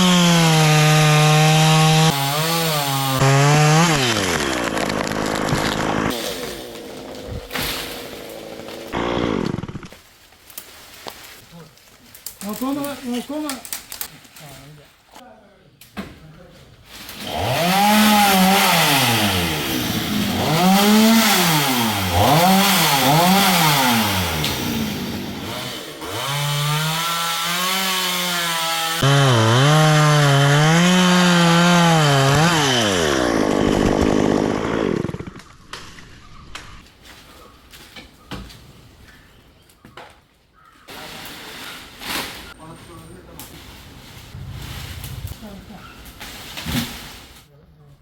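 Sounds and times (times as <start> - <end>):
chainsaw cutting wood: 0.0 - 9.9, 17.2 - 35.6.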